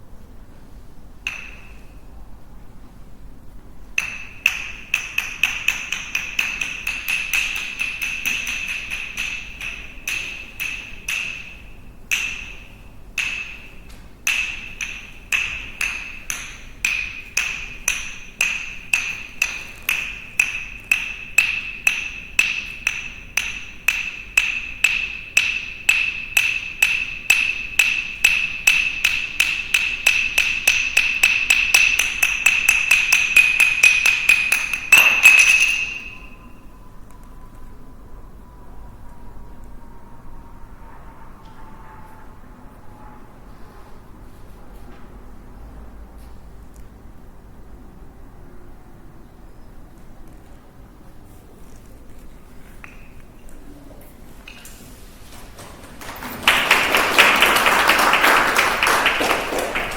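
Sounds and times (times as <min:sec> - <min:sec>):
sticks clacking: 0:01.2 - 0:02.0, 0:04.0 - 0:37.6, 0:51.6 - 0:53.8.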